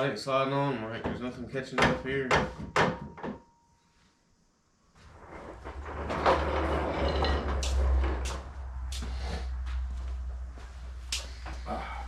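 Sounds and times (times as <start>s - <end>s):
steady low rumble: 5.0s - 12.0s
metal parts knocking and clanking: 5.6s - 8.5s.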